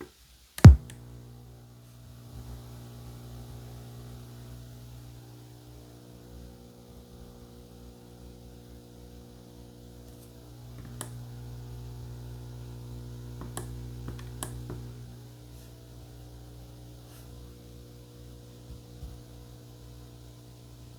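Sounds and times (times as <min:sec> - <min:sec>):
buzzy electrical hum: 0:00.6 - 0:20.9.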